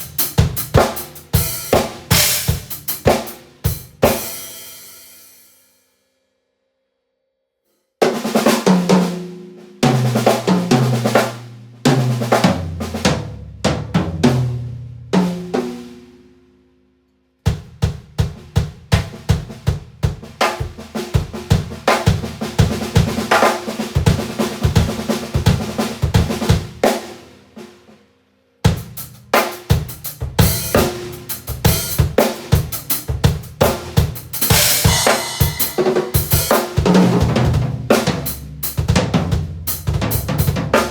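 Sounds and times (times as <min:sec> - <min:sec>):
kick and snare drum beat: 0:00.0 - 0:04.6, 0:08.0 - 0:15.9, 0:17.5 - 0:27.2, 0:28.7 - 0:40.9.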